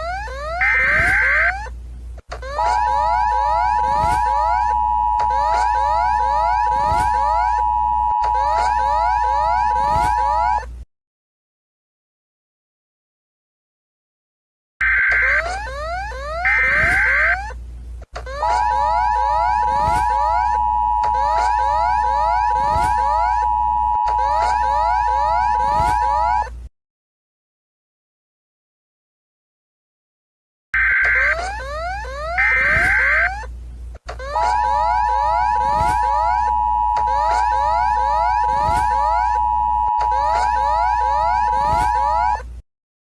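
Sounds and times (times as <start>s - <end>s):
steady alarm tone: 2.5s - 10.6s, 18.4s - 26.4s, 34.3s - 42.4s
rising alarm sweep: 3.0s - 10.4s, 18.8s - 26.4s, 34.7s - 42.3s
two-tone attention signal: 35.3s - 42.1s.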